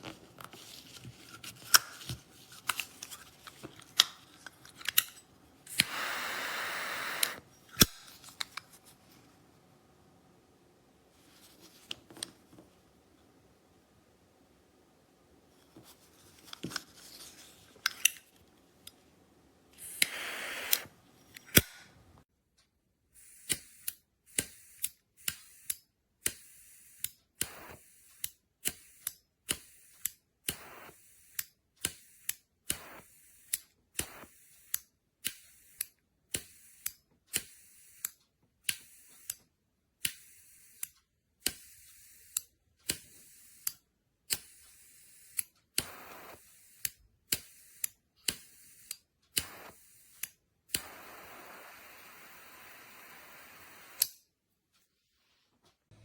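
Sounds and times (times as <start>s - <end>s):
gas hissing: 5.7s - 8.0s, 19.8s - 22.0s, 44.4s - 54.1s
lighter clicks: 5.7s - 8.6s, 19.8s - 21.9s, 40.0s - 54.2s.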